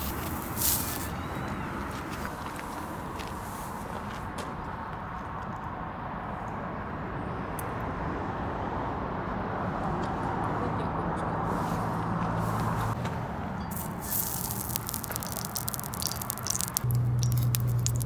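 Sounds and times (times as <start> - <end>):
fire crackling and popping: 13.7 - 18.0
meat sizzling on a grill: 13.8 - 18.0.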